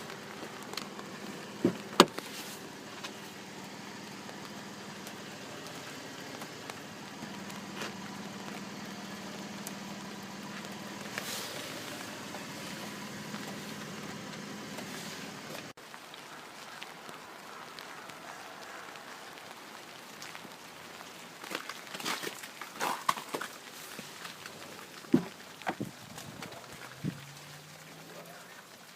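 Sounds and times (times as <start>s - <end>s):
vehicle engine idling: 0.0s - 15.8s, 23.7s - 28.8s
even hiss: 11.0s - 15.7s.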